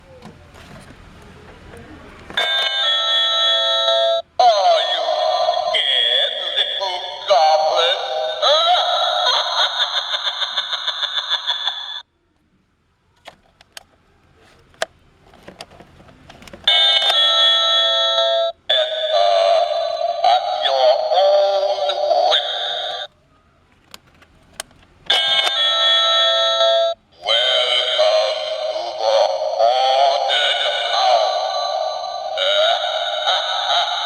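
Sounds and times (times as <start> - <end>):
toy electronic voice and tune: 2.4 - 12.0, 16.7 - 23.1, 25.1 - 34.0
chiming electronic tune: 16.7 - 21.2.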